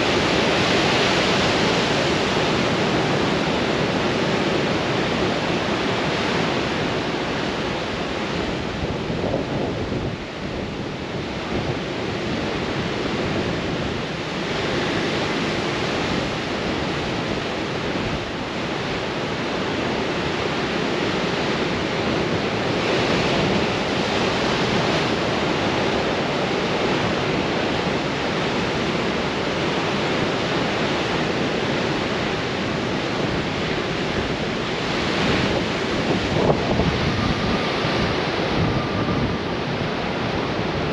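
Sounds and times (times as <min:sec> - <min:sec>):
ocean waves breaking on rocks: 0:00.0 - 0:40.9
wind buffeting microphone: 0:00.0 - 0:40.9.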